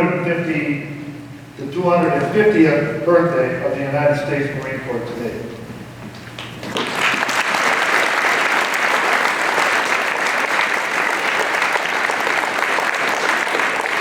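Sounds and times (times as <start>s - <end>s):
audience applauding: 6.3s - 14.0s.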